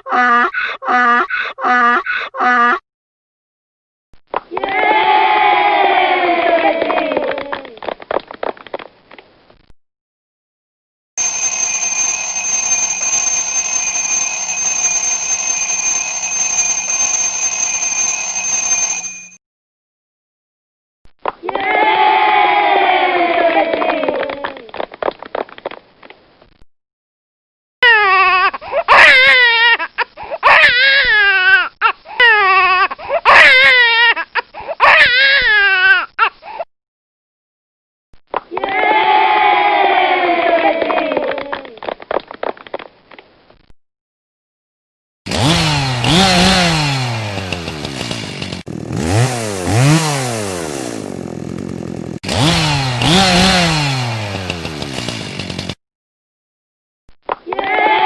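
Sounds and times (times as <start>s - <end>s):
baby crying: 0.0s - 2.8s, 27.8s - 36.3s.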